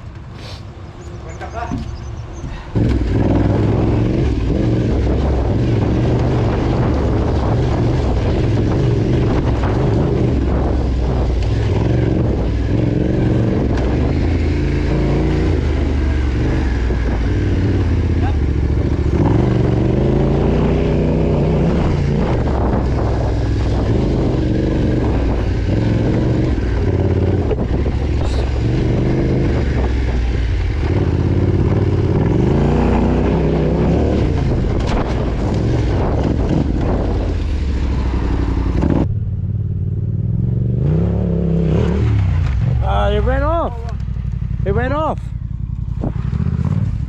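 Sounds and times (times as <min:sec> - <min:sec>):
hiss: 0:00.4 - 0:00.7
motorbike engine revving: 0:01.2 - 0:47.0.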